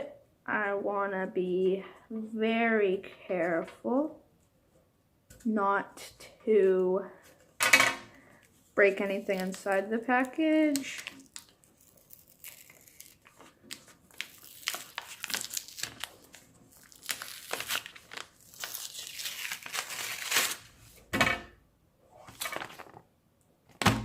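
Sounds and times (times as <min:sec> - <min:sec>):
paper envelope ripping: 0:09.0 - 0:21.0, 0:22.2 - 0:23.0.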